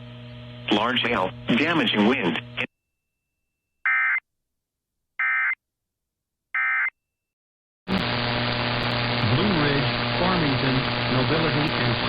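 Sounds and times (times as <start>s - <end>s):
static hiss with low hum: 7.9s - 12.0s.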